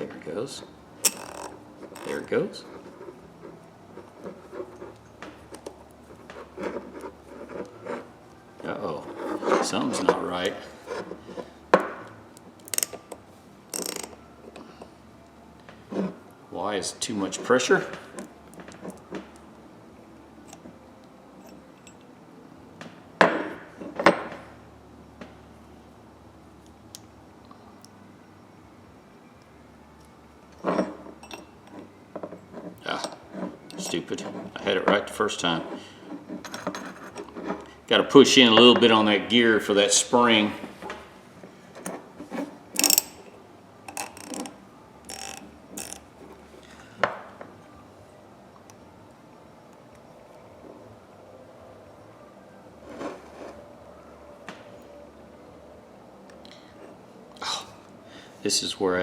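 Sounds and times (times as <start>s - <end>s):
metal tools clinking: 1.0s - 2.3s, 13.7s - 14.2s, 30.5s - 35.5s, 36.4s - 37.6s, 41.8s - 43.3s, 43.9s - 46.1s
ratchet parts clicking: 1.0s - 2.3s, 12.6s - 14.2s, 42.7s - 43.3s, 43.9s - 46.1s.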